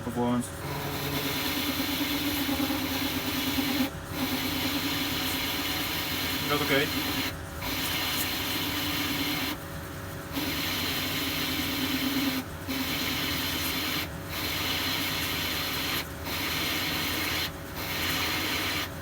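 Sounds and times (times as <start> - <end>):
lathe hum: 0.1 - 19.0
lathe tool cutting steel: 0.6 - 9.5.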